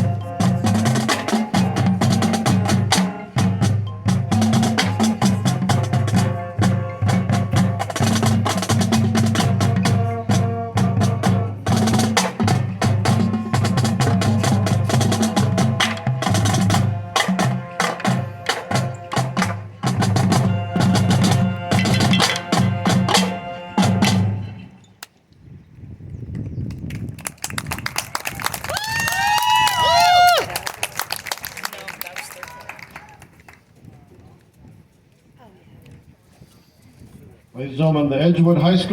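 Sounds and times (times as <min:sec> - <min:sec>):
mallet keyboard notes: 0:00.0 - 0:24.8.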